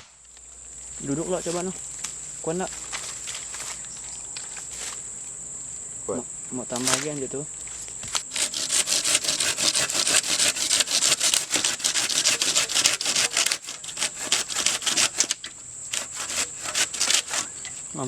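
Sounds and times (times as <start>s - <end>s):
high insect drone: 0.1s - 18.0s
hand saw cutting wood: 8.2s - 17.6s.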